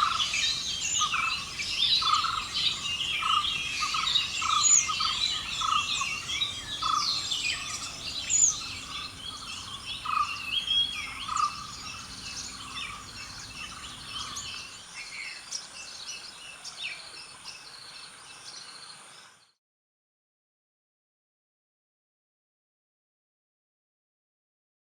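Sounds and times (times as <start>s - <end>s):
birds chirping and calling: 0.0s - 19.3s.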